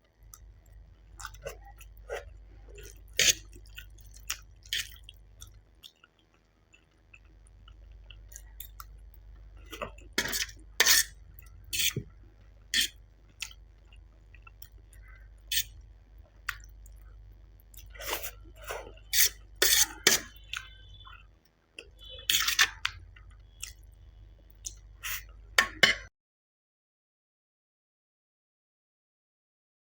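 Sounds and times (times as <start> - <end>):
noodles chewing with mouth clicks: 0.2 - 10.1, 12.8 - 19.1.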